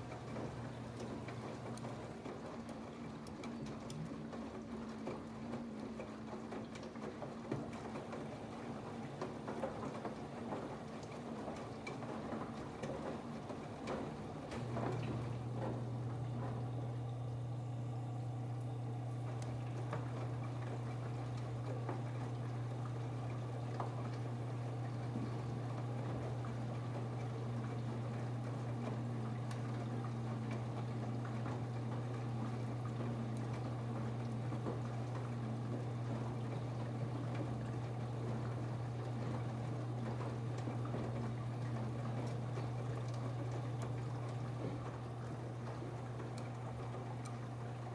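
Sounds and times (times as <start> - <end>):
water sloshing in washing machine: 0.0 - 47.9
steady low hum: 14.6 - 21.5.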